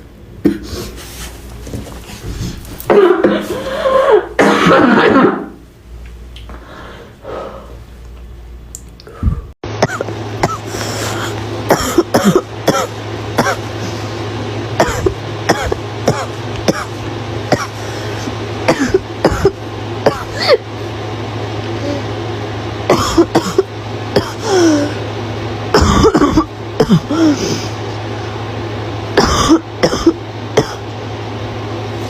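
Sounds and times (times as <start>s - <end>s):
girl coughing: 2.9s - 5.6s, 9.8s - 10.7s, 11.7s - 13.7s, 14.8s - 16.9s, 17.5s - 17.8s, 18.7s - 20.6s, 22.9s - 24.9s, 25.7s - 27.6s, 29.2s - 30.8s.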